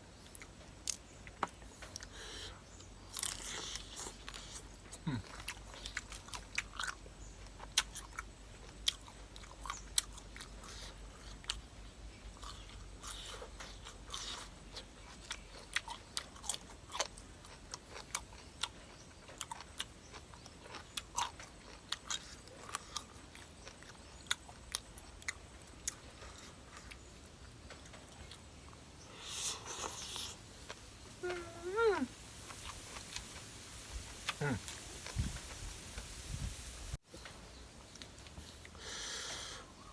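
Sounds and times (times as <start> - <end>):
person chewing and biting: 3.1 - 11.6, 12.4 - 31.4.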